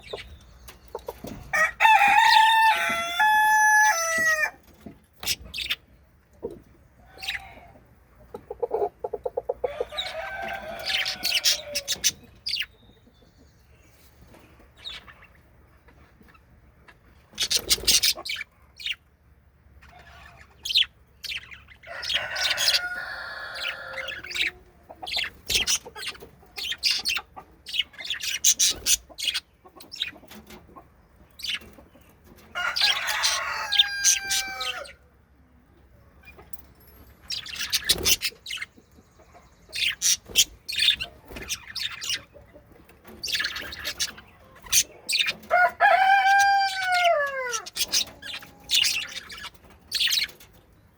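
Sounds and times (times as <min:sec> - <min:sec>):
budgerigars chirping: 0:00.0 - 0:01.4, 0:05.2 - 0:05.9, 0:08.5 - 0:13.3, 0:16.2 - 0:19.1, 0:19.8 - 0:30.7, 0:31.3 - 0:35.0, 0:37.2 - 0:50.6.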